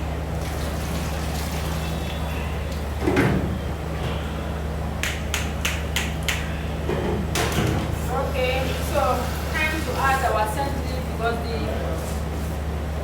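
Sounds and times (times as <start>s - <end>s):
sharp taps or clicks: 5.0s - 6.5s.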